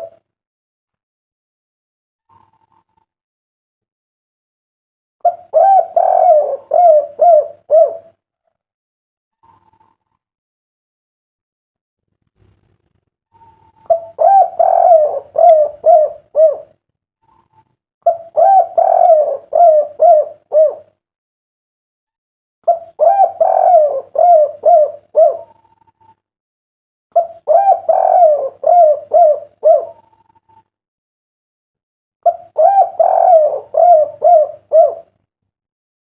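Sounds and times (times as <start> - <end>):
dove cooing: 0.0 - 0.2, 5.2 - 8.2, 13.4 - 20.9, 22.7 - 26.1, 27.1 - 30.6, 32.2 - 35.2.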